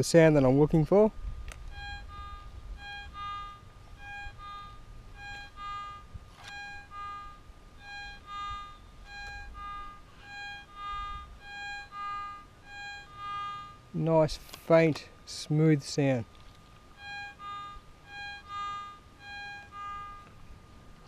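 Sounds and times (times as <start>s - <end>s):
metal detector two-tone signal: 1.7s - 13.8s, 17.0s - 20.3s.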